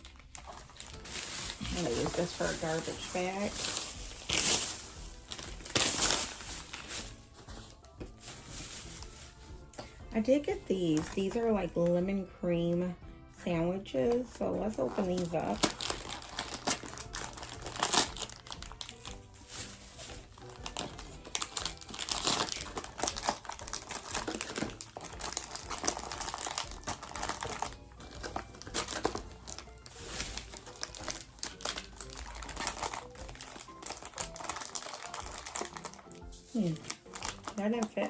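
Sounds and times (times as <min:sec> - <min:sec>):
snack packaging crinkling: 0:00.0 - 0:09.7, 0:14.2 - 0:38.0.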